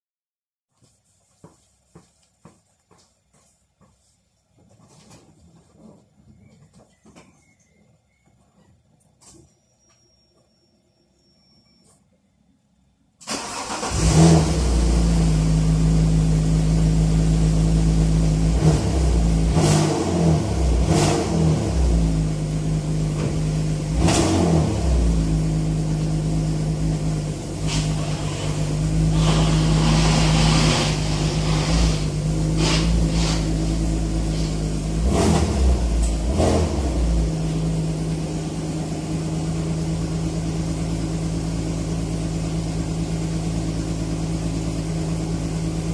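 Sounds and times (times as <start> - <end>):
car engine starting and idling: 13.2 - 45.9.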